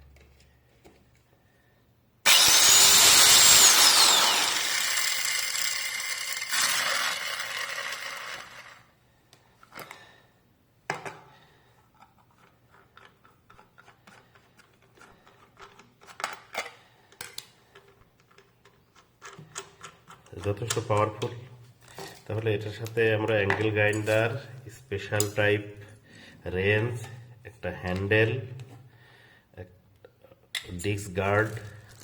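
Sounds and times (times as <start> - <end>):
angle grinder whining: 2.3 - 8.9.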